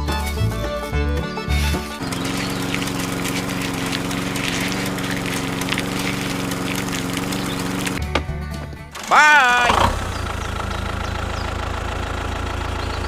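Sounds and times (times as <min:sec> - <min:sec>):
music: 0:00.0 - 0:03.6, 0:08.0 - 0:09.2
engine running steadily: 0:00.0 - 0:13.0.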